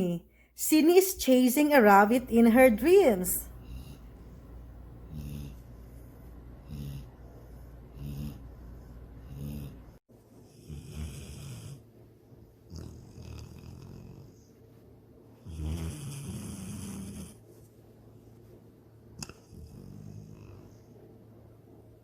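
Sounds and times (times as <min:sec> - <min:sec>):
dog snoring: 0:03.6 - 0:04.4, 0:05.0 - 0:11.9, 0:12.6 - 0:14.6, 0:15.4 - 0:17.4, 0:19.2 - 0:21.0.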